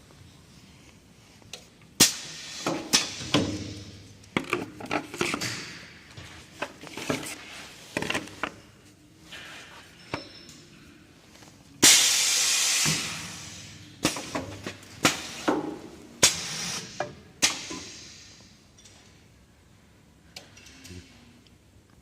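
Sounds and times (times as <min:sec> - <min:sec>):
loud steady hiss: 0:02.0 - 0:04.0, 0:11.8 - 0:18.7.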